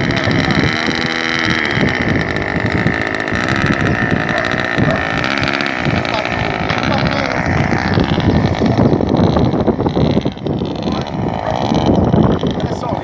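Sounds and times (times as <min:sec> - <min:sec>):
model airplane motors whining: 0:00.0 - 0:13.0.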